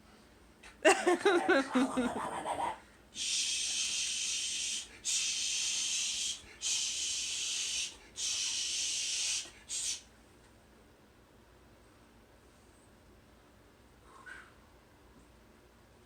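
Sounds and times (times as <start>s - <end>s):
person making hissing sounds: 3.2s - 10.1s.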